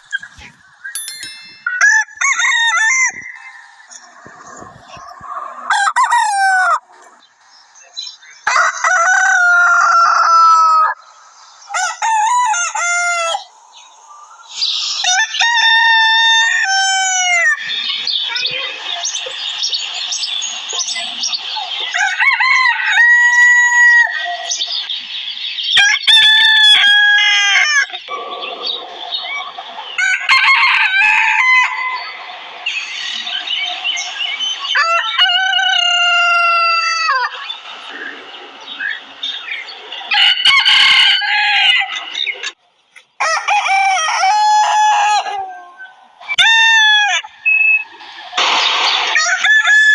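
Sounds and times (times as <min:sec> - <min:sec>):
roosters crowing: 0:01.1 - 0:07.2, 0:08.2 - 0:17.9, 0:21.8 - 0:24.6, 0:25.7 - 0:42.6, 0:43.2 - 0:47.8, 0:48.4 - 0:49.9.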